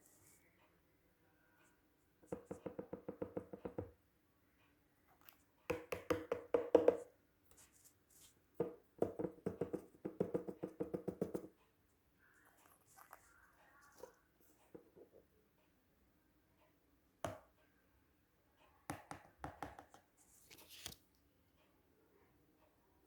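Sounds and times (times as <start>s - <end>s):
rapid tapping on hollow object: 2.2s - 4.0s, 5.7s - 7.1s, 8.6s - 11.6s.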